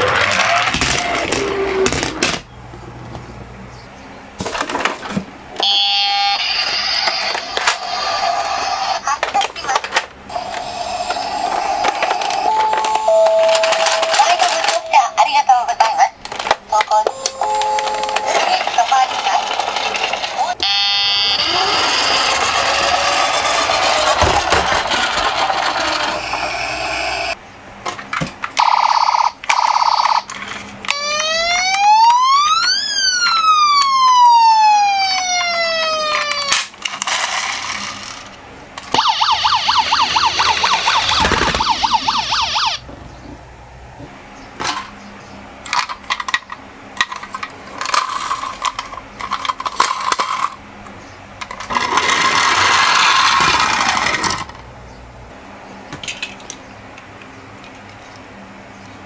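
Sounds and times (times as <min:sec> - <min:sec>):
toy electronic siren: 0:05.6 - 0:09.0, 0:10.3 - 0:15.3, 0:17.0 - 0:19.6, 0:20.6 - 0:24.2, 0:30.9 - 0:36.6, 0:38.9 - 0:42.8
toy cars rattling down a slope: 0:06.3 - 0:16.6, 0:17.9 - 0:27.4, 0:35.2 - 0:42.8, 0:45.7 - 0:50.6, 0:51.4 - 0:54.6.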